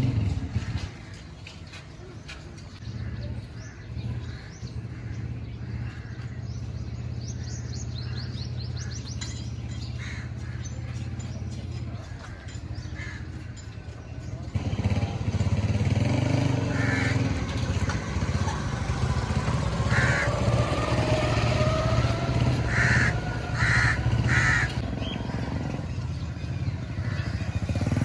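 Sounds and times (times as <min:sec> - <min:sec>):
motorcycle and vehicle engines rumbling: 0:00.0 - 0:28.0
crow cawing: 0:16.7 - 0:17.4, 0:19.8 - 0:20.6, 0:22.6 - 0:24.8.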